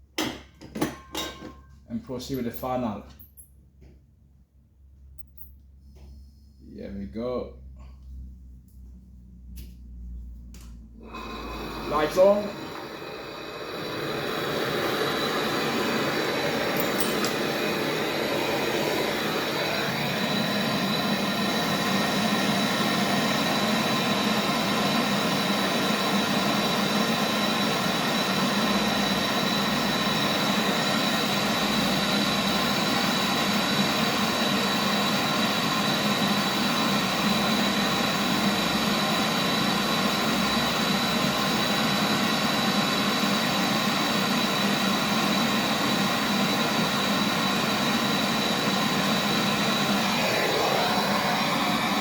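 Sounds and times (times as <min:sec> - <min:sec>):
gas torch hissing and whistling: 0:10.9 - 0:52.0.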